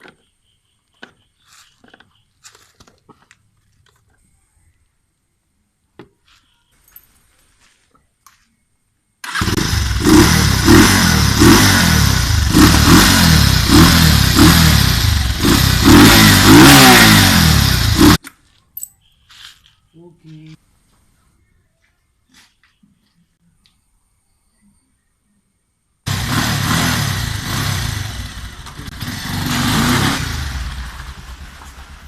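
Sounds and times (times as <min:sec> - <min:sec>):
motorcycle engine revving: 0:09.2 - 0:18.2, 0:26.1 - 0:32.0.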